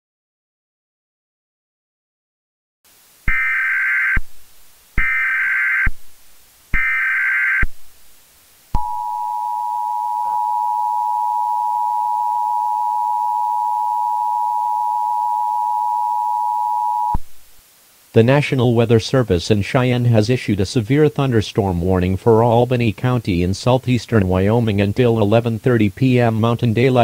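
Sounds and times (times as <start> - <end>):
two-tone attention signal: 8.8 - 17.2.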